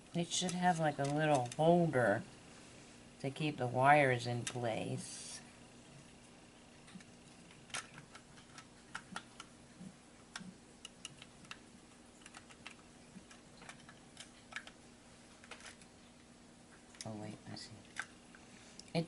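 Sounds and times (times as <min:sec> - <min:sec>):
plastic mouse parts clicking: 0:06.9 - 0:09.5, 0:12.2 - 0:14.8.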